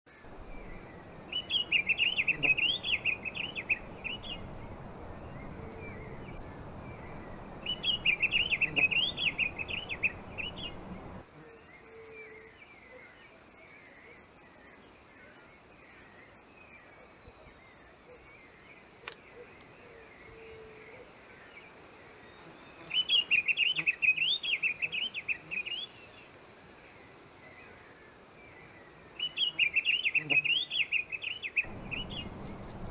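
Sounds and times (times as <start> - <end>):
background hiss: 0.1 - 11.2, 31.7 - 32.9
faint distant bird chirps: 0.1 - 11.2, 29.2 - 32.9
bird warbling song: 0.2 - 11.2, 29.2 - 32.9.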